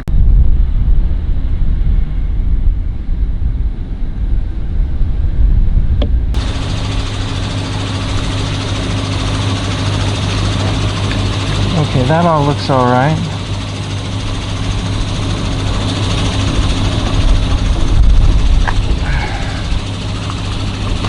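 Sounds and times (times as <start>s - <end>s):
rough low rumble: 0.0s - 21.0s
steady motor hum: 0.0s - 21.0s.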